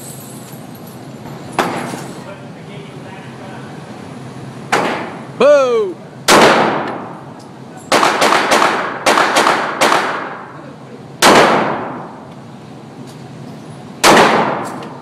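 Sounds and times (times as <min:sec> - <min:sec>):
gunshots with echoing tail: 0:06.3 - 0:07.1, 0:07.9 - 0:10.4, 0:11.2 - 0:12.0, 0:14.0 - 0:14.8.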